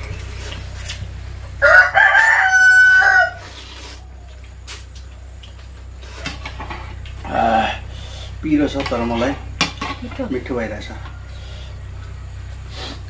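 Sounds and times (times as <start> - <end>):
steady low hum: 0.0 - 13.0
rooster crowing: 1.5 - 4.4, 10.6 - 12.7.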